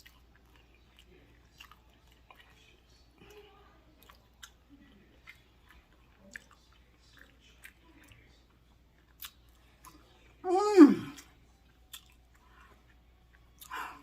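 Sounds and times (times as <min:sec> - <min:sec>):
person chewing: 0:00.0 - 0:03.4, 0:04.0 - 0:14.0
appreciative mmm vocal sound: 0:10.4 - 0:11.3.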